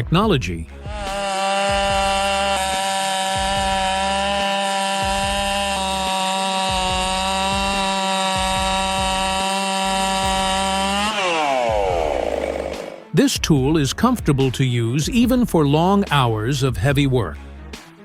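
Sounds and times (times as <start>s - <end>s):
chainsaw at full throttle: 0.8s - 13.2s.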